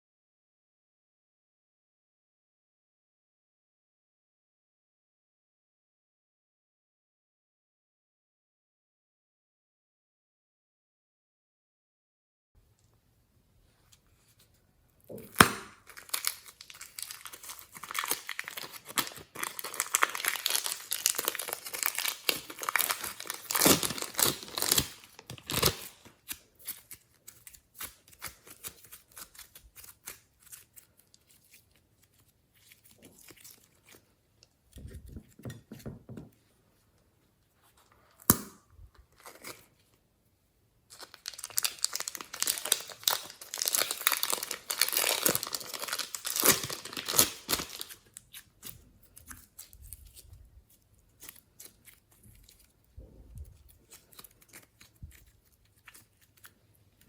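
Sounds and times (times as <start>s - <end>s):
slime crackling and popping: 15.2s - 28.6s, 40.9s - 48.7s.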